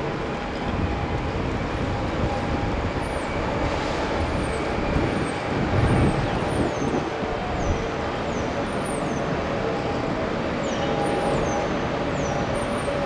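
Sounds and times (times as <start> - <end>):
jet engines roaring: 0.0 - 13.0
wind rumbling on microphone: 0.2 - 8.4.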